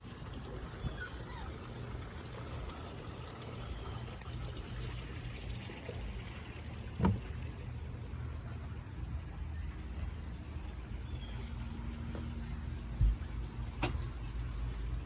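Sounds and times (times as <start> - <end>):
low rumbling background noise: 0.0 - 15.0
dull thump: 7.0 - 7.3.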